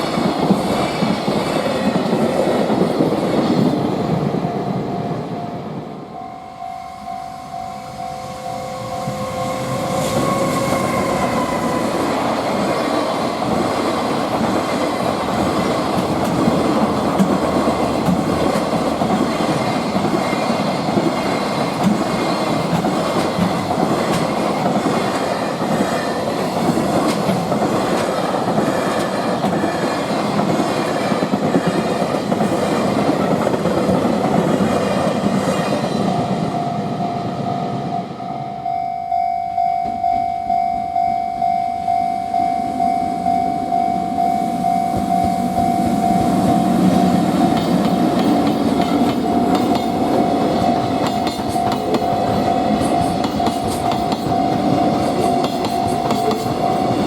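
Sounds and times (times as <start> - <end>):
freight train passing: 0.0 - 57.0.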